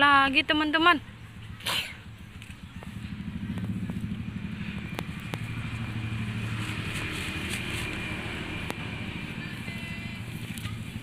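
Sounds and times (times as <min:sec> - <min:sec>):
engine running with rapid pulsing: 0:00.0 - 0:11.0.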